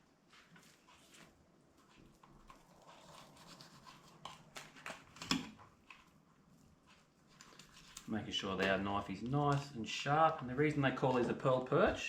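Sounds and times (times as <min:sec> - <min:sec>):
knife scraping and cutting fish: 0:00.9 - 0:08.1.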